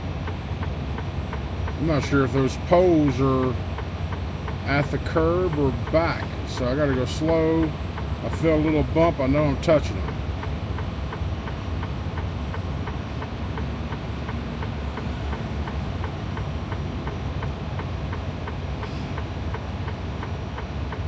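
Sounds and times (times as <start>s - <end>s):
diesel engine rumbling: 0.0s - 21.0s
turn signal ticking: 0.0s - 21.0s.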